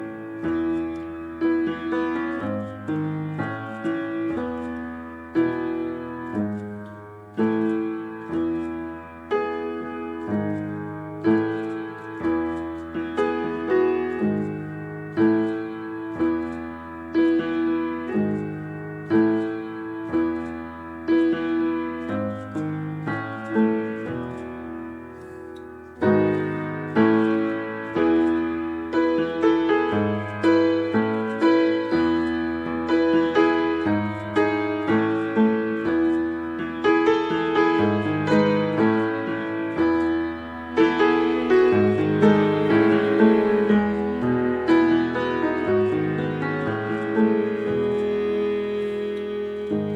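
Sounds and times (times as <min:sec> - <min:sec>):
piano music: 0:00.0 - 0:49.9.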